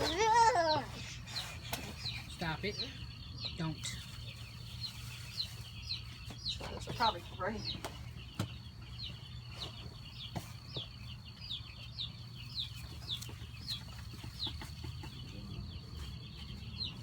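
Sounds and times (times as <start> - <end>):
chicks peeping: 0.0 - 17.0.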